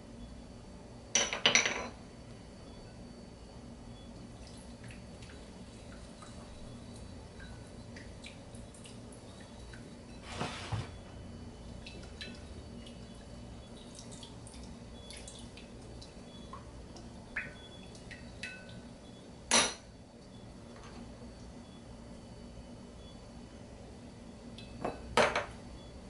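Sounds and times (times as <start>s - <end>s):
wet clicks and drips: 13.9s - 18.8s.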